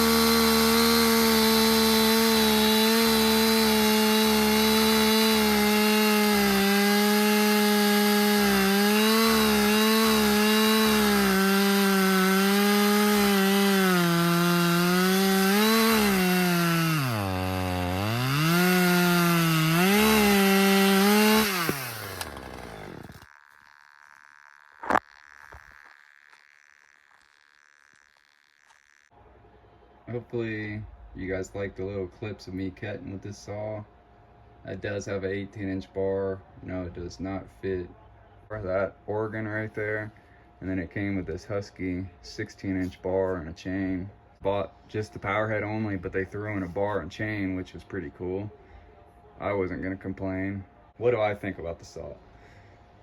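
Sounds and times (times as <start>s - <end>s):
chainsaw cutting wood: 0.0s - 29.1s.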